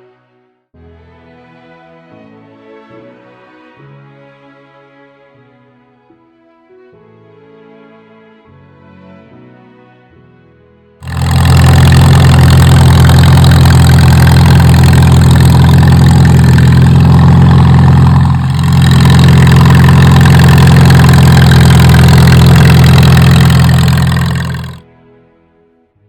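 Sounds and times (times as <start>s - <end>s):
tractor engine running: 11.0s - 24.8s.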